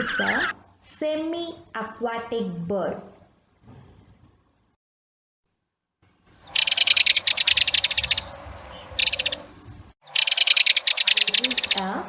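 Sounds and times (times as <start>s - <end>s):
rattling bird chatter: 0.0s - 0.5s, 6.4s - 12.0s.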